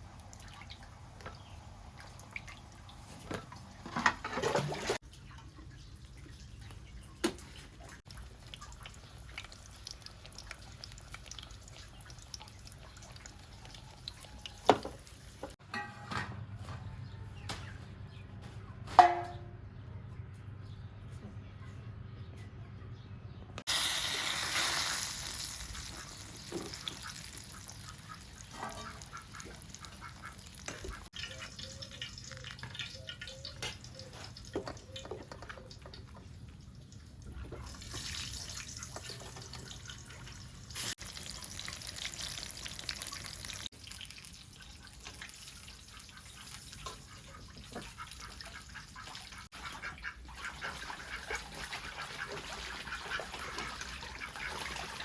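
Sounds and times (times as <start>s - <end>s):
water: 0.0s - 15.6s, 23.7s - 55.0s
ducks quacking: 25.7s - 31.5s, 46.2s - 55.0s.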